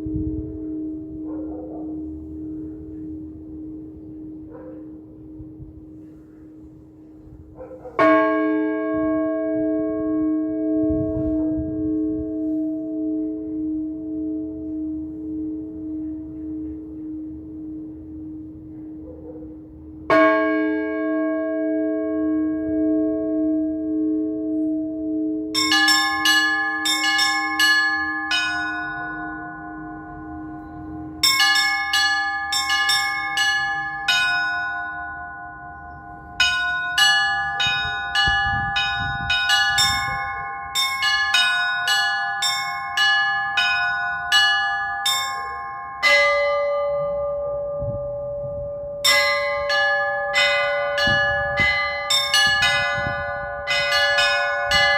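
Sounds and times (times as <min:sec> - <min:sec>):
large bell ringing: 0:00.0 - 0:54.9
low bell: 0:00.0 - 0:54.9.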